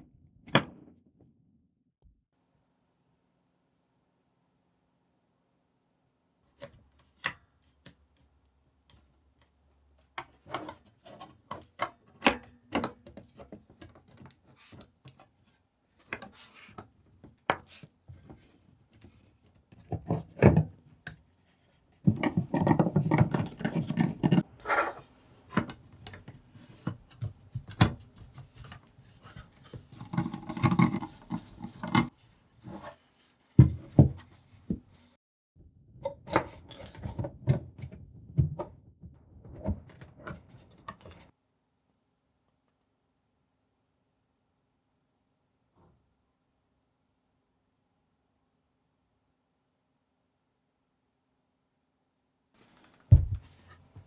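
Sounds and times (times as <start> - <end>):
rubbing and handling: 21.5 - 35.2.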